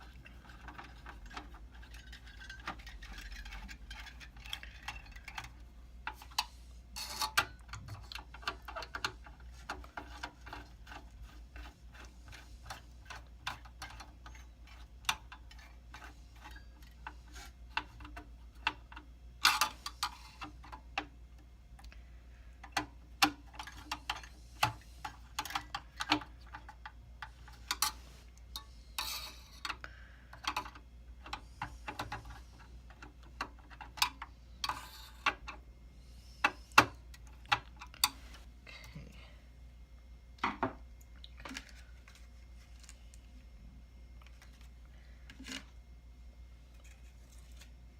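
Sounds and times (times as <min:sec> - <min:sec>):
steady low hum: 0:00.0 - 0:47.9
metal and plastic parts clicking: 0:22.6 - 0:35.6.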